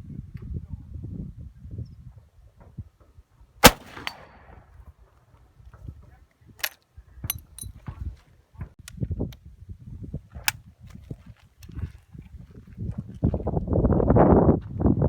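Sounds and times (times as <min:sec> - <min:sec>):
sharp clicks: 0:03.6 - 0:04.4
rifle shot with echo: 0:03.6 - 0:04.6.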